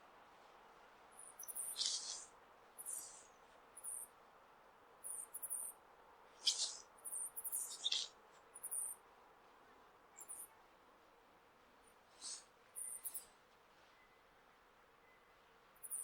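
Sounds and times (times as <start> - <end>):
flying squirrel high-pitched squeaks: 1.2 - 4.1, 6.4 - 9.0, 10.2 - 10.5, 12.2 - 13.3.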